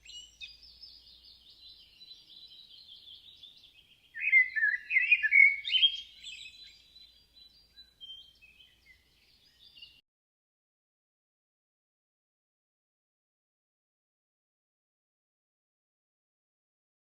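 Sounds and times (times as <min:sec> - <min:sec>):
bird singing varied song: 0:00.0 - 0:10.0
high twittering birds: 0:00.0 - 0:10.0.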